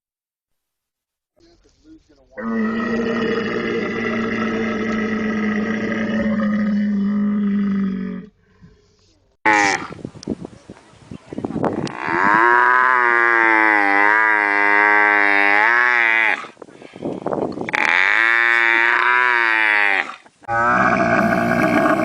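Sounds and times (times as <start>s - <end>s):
camel calling: 17.7s - 22.0s.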